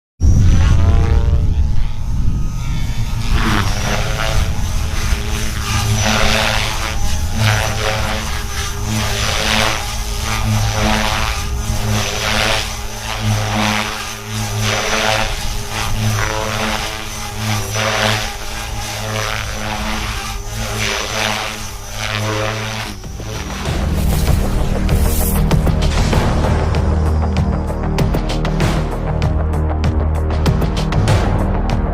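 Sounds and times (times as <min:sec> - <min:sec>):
toy helicopter motor whining: 0:00.2 - 0:25.6
rotor rushing noise: 0:00.2 - 0:29.6.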